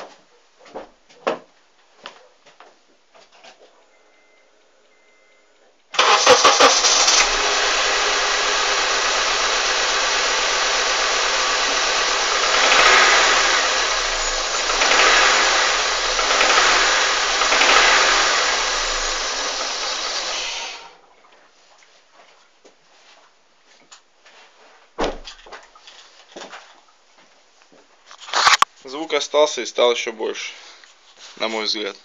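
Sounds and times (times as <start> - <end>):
engine knocking: 6.0 - 20.6
car engine starting and running: 6.0 - 21.0.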